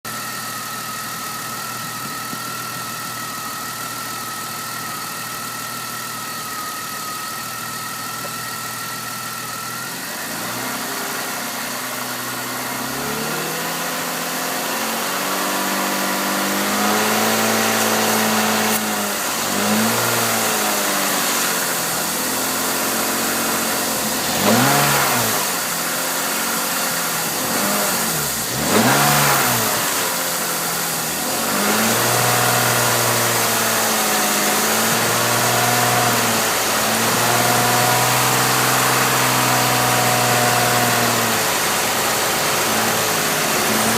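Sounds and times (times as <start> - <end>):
engine revving: 9.0 - 43.9
engine whine: 16.1 - 43.9.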